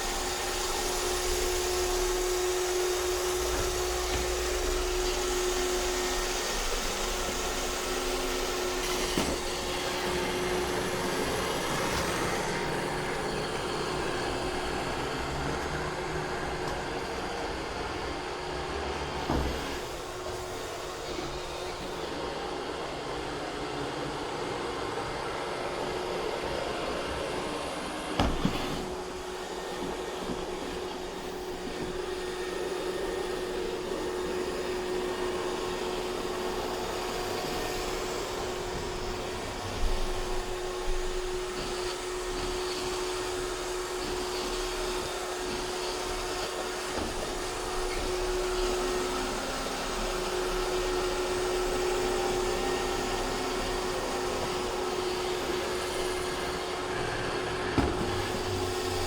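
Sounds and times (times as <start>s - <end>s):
robot vacuum whirring: 0.0s - 59.0s.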